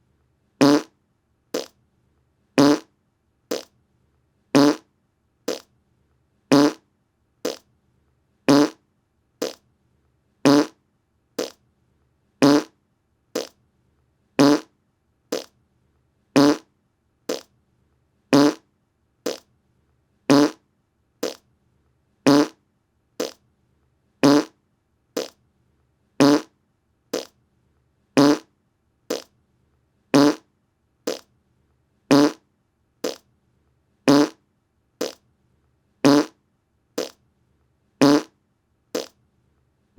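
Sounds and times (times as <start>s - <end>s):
fart sounds: 0.6s - 0.9s, 1.6s - 1.8s, 2.6s - 2.9s, 3.5s - 3.7s, 4.6s - 4.9s, 5.5s - 5.7s, 6.5s - 6.8s, 7.4s - 7.6s, 8.5s - 8.8s, 9.4s - 9.6s, 10.5s - 10.8s, 11.4s - 11.6s, 12.4s - 12.8s, 13.4s - 13.6s, 14.4s - 14.7s, 15.3s - 15.5s, 16.4s - 16.7s, 17.3s - 17.5s, 18.3s - 18.6s, 20.3s - 20.6s, 21.2s - 21.4s, 22.3s - 22.6s, 23.2s - 23.4s, 24.2s - 24.6s, 25.2s - 25.4s, 26.2s - 26.5s, 27.1s - 27.4s, 28.2s - 28.5s, 29.1s - 29.3s, 30.2s - 30.5s, 31.1s - 31.3s, 32.1s - 32.4s, 33.0s - 33.2s, 34.1s - 34.4s, 35.0s - 35.2s, 36.0s - 36.4s, 37.0s - 37.2s, 38.0s - 38.3s, 39.0s - 39.2s.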